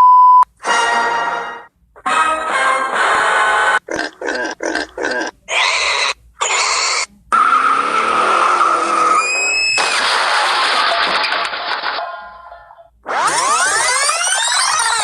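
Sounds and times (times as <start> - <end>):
short squealing bursts: 4.6 - 10.0, 13.1 - 15.0.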